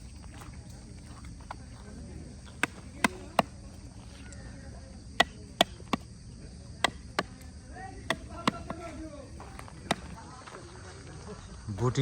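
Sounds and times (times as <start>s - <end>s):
sharp knocks: 2.6s - 3.5s, 5.2s - 6.1s, 6.8s - 7.4s, 8.1s - 10.2s.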